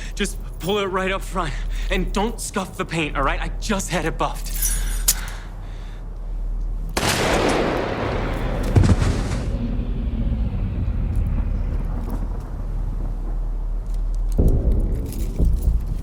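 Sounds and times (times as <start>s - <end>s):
low rumble: 5.5s - 16.0s
loud blast: 7.0s - 13.2s.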